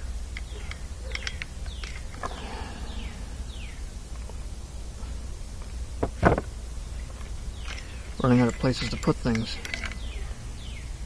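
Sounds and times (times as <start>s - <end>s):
sharp knocks: 6.0s - 6.5s.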